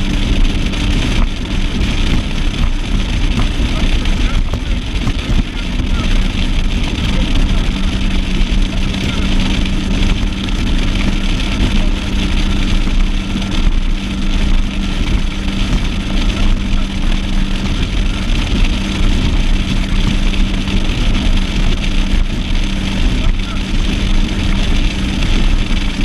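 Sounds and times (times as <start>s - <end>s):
heavy wind: 0.0s - 26.0s
outboard motor humming: 0.0s - 26.0s
water rushing: 0.0s - 26.0s.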